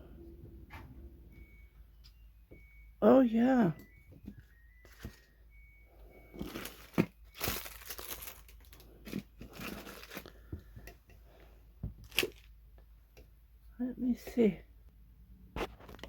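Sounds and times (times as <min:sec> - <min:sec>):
plastic crinkling and rustling: 0:04.1 - 0:05.4, 0:06.1 - 0:10.9, 0:11.9 - 0:12.6.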